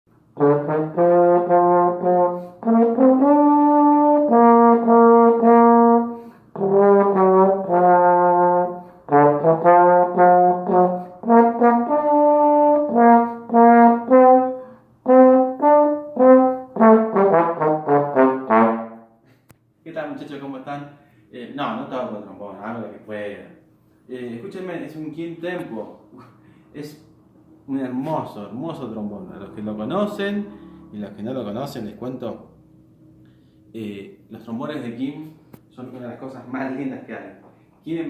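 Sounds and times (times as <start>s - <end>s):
solo trombone march melody: 0.2s - 19.2s.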